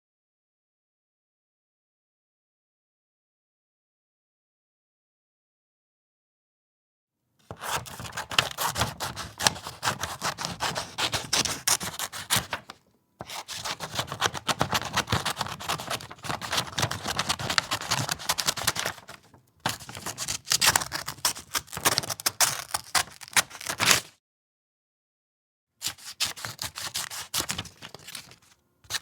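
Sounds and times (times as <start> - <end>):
scissors cutting paper: 7.5 - 24.1, 25.8 - 29.0.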